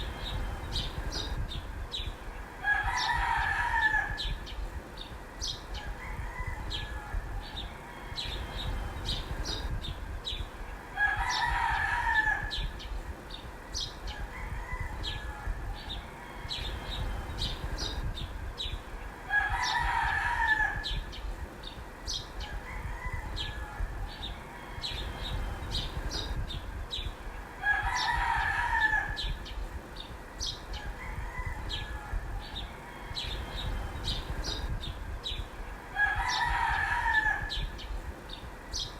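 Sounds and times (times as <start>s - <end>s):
rooster crowing: 2.6s - 4.5s, 5.7s - 8.8s, 11.0s - 12.8s, 14.1s - 17.0s, 19.2s - 21.1s, 22.4s - 25.4s, 27.4s - 29.4s, 30.7s - 33.7s, 35.8s - 37.8s.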